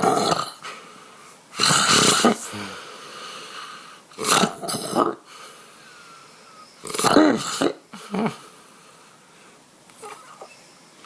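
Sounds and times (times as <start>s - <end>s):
person snoring: 1.6s - 3.0s
person snorting: 1.6s - 3.4s.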